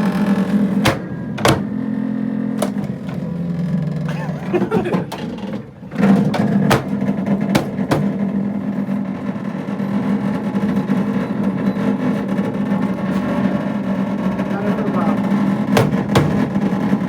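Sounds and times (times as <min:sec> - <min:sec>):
microwave oven humming: 0:00.0 - 0:17.0.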